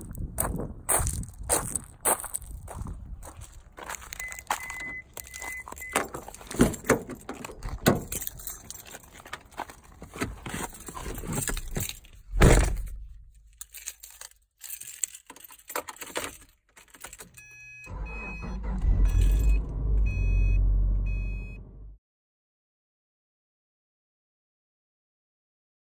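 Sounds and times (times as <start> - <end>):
keys jangling: 4.1 - 17.6
short beeps: 4.2 - 6.0, 17.4 - 22.0
car engine running: 17.9 - 22.0.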